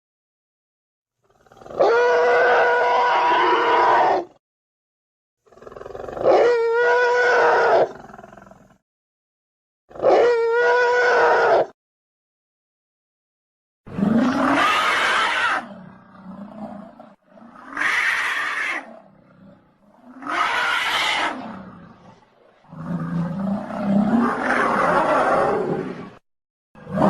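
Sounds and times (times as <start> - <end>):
dinosaur roars: 1.3 - 4.4, 13.9 - 26.2, 26.8 - 27.0.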